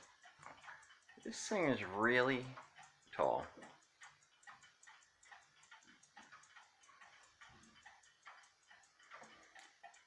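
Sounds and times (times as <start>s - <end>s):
clock ticking: 0.0s - 10.0s.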